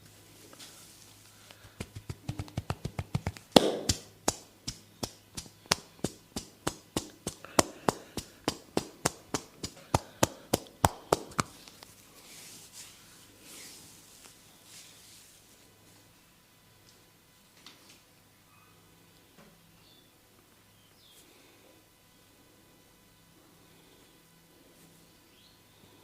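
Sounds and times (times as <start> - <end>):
hands tapping on head: 1.5 - 11.6
hand slap: 1.6 - 11.6.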